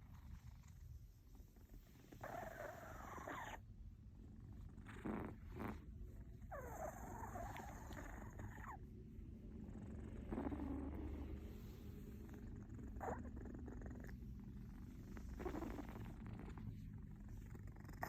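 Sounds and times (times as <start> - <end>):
pet snoring: 2.2 - 3.6, 4.7 - 8.8, 9.6 - 18.0
snuffling: 9.6 - 18.0.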